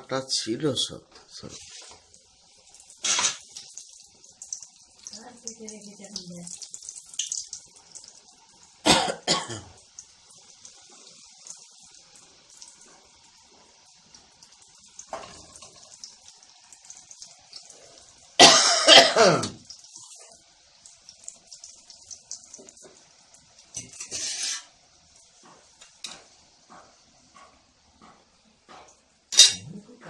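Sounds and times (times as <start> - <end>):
deep-frying sizzle in oil: 0.0 - 30.0
person coughing: 8.9 - 9.7, 18.4 - 19.6.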